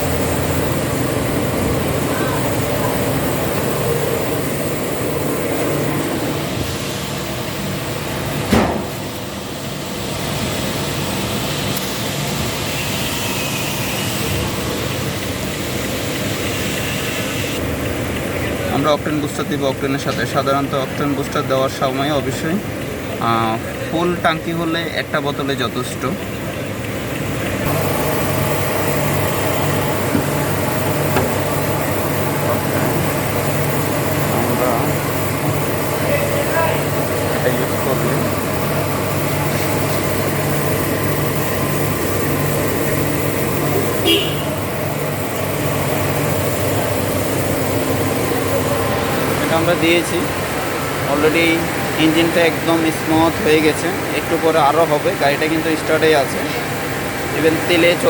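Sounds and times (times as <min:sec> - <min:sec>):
car engine running: 0:00.0 - 0:12.6, 0:17.6 - 0:58.0
sharp thump: 0:08.5 - 0:09.1.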